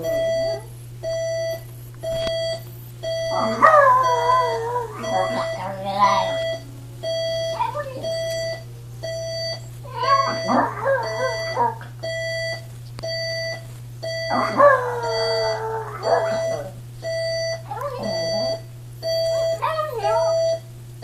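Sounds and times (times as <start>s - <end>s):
alarm clock beeping: 0.0s - 20.7s
dog howling: 3.3s - 6.6s, 7.5s - 8.3s, 9.8s - 12.0s, 14.3s - 16.8s, 17.6s - 18.6s, 19.3s - 20.5s.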